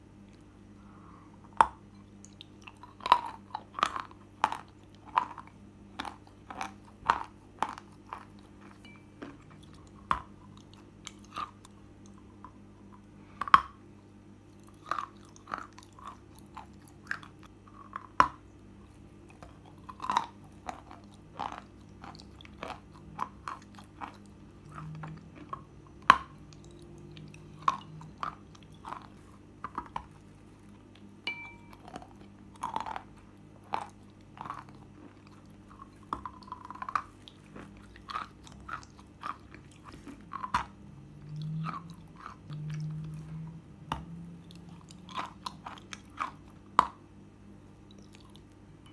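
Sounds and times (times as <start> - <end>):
faint steady hum: 0.0 - 48.9
chalk being chewed: 33.7 - 46.5.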